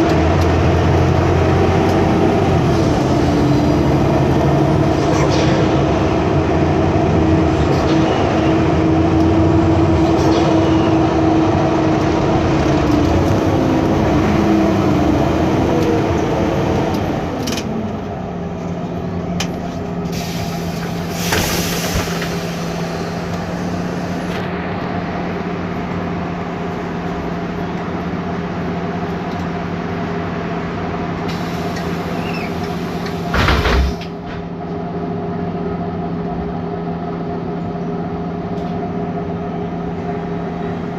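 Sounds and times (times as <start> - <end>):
bus engine and fan whine: 0.0 - 40.9
air hissing: 20.1 - 24.3, 31.3 - 34.1.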